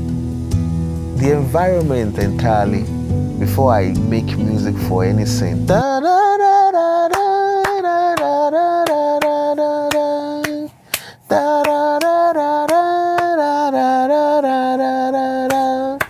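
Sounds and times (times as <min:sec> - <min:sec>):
person singing: 0:01.2 - 0:16.0
clapping beat: 0:07.1 - 0:13.4, 0:15.5 - 0:15.7.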